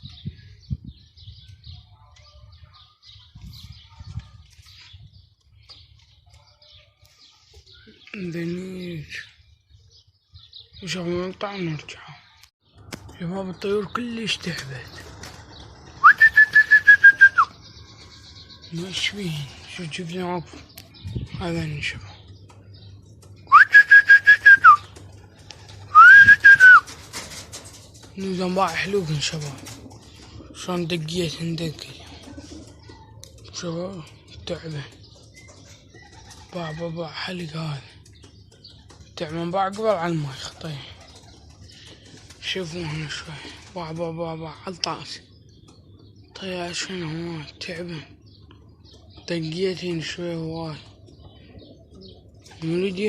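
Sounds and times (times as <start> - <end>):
birds chirping: 0.0 - 53.0
person whistling: 25.9 - 26.8.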